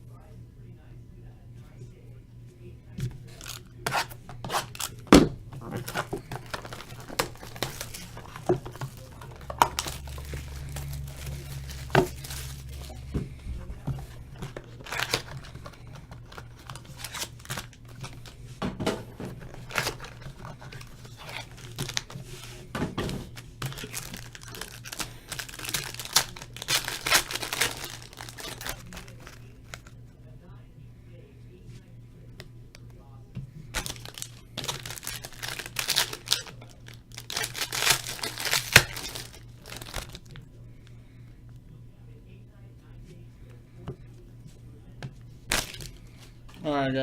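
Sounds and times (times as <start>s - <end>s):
plastic wrapper tearing and crinkling: 3.3s - 13.1s, 13.9s - 18.4s, 19.4s - 22.6s, 23.3s - 29.9s, 33.7s - 40.4s, 45.5s - 46.2s
cardboard packaging rustling and knocking: 3.4s - 29.1s.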